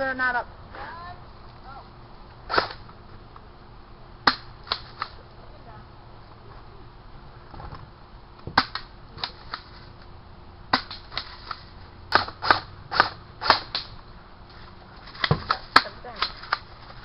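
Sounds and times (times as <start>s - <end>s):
airsoft gun shots: 2.5s - 2.8s, 4.2s - 5.2s, 8.5s - 9.4s, 10.7s - 11.3s, 12.1s - 14.0s.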